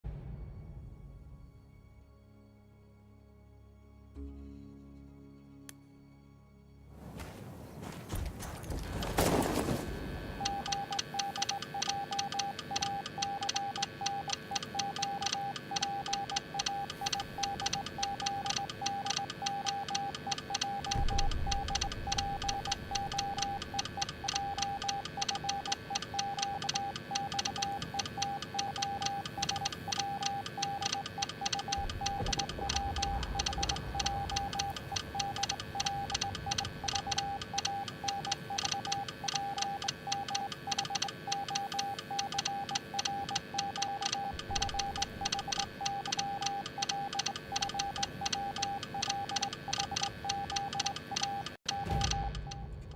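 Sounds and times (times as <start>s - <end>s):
morse code beeps: 8.1s - 52.7s
low rumbles: 31.8s - 37.0s.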